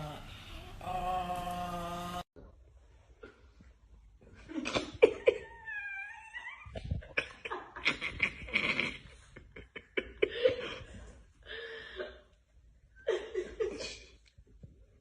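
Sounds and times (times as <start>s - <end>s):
small dog whining: 5.4s - 6.8s.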